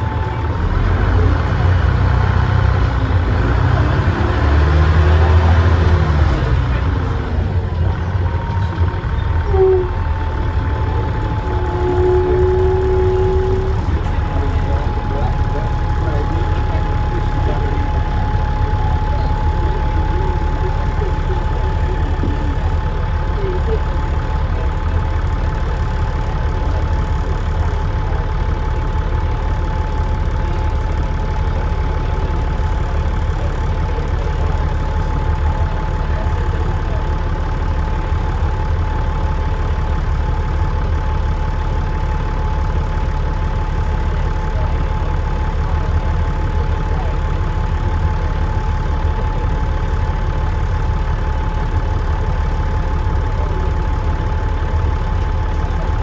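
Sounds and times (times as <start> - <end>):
bus diesel engine rumble: 0.0 - 56.0
turbo whistle: 9.1 - 14.5.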